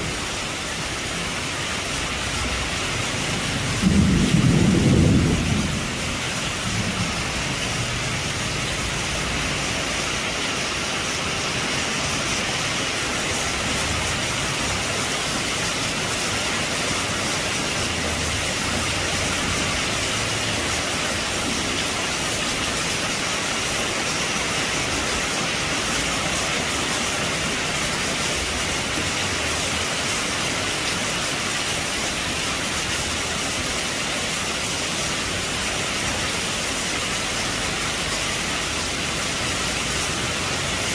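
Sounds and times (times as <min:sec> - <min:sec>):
heavy rain on metal roof: 0:00.0 - 0:40.9
thunder rumble: 0:03.0 - 0:09.2.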